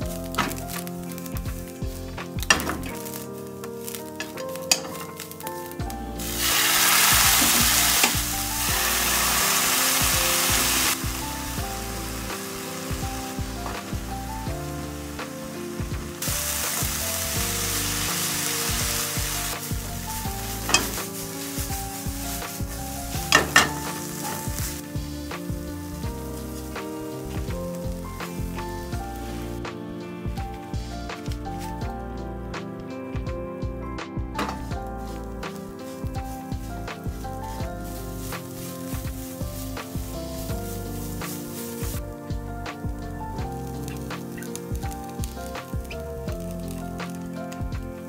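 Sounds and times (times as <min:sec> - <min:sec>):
food sizzling in frying pan: 0:06.2 - 0:29.4, 0:36.1 - 0:42.0.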